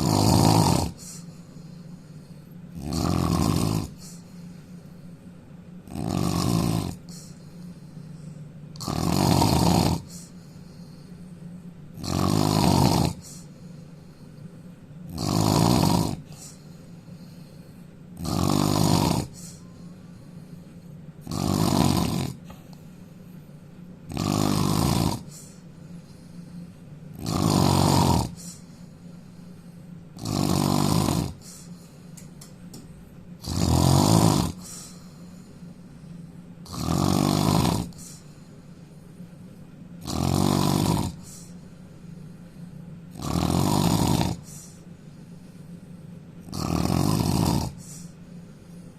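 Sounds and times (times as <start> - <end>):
man snoring loudly: 0.0 - 1.3, 2.7 - 4.3, 5.8 - 7.4, 8.8 - 10.3, 12.0 - 13.5, 15.1 - 16.6, 18.2 - 19.6, 21.2 - 22.5, 24.1 - 25.6, 27.1 - 28.6, 30.2 - 31.7, 33.4 - 34.9, 36.6 - 38.2, 40.0 - 41.5, 43.1 - 44.7, 46.4 - 48.1.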